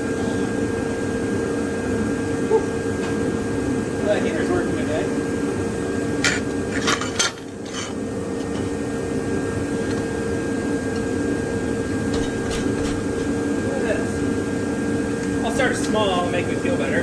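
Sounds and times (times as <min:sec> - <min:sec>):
shop heater humming: 0:00.0 - 0:17.0
metal pieces scraping and clinking: 0:06.2 - 0:08.7.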